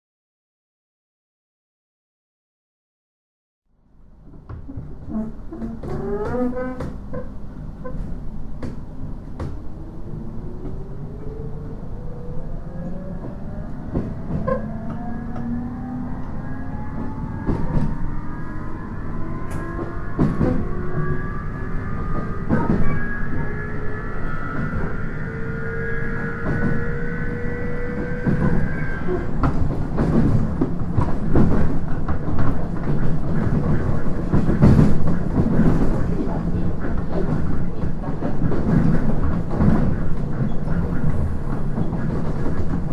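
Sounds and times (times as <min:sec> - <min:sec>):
train running rumble: 0:03.9 - 0:42.9
electric train motor whine: 0:09.7 - 0:29.2
rail-joint clicks: 0:13.1 - 0:15.6, 0:19.4 - 0:20.8.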